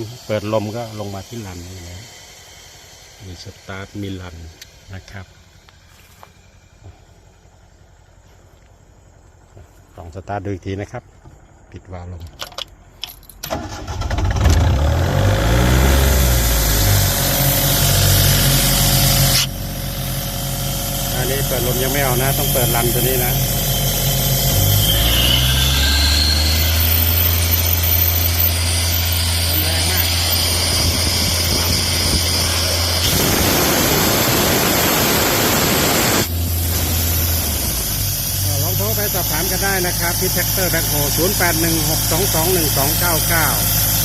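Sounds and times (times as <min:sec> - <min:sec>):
loud air hiss: 0:00.0 - 0:07.3, 0:15.7 - 0:44.0
diesel air compressor running: 0:00.0 - 0:09.8, 0:13.5 - 0:44.0
compressed air rushing out: 0:28.8 - 0:44.0.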